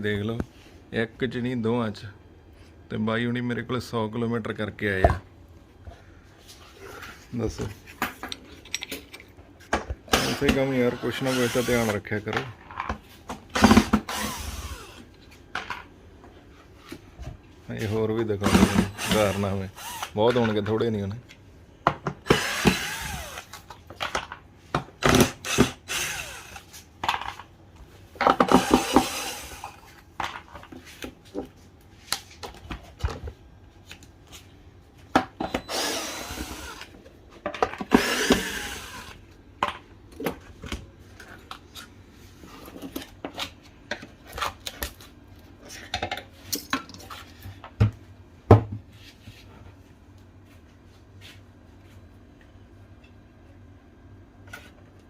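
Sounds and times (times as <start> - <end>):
tools clicking and knocking: 8.0 - 10.2
small power tool running: 13.6 - 15.0, 18.5 - 20.2, 22.2 - 23.5, 25.1 - 26.6, 28.5 - 29.7, 35.7 - 36.9, 37.9 - 39.2.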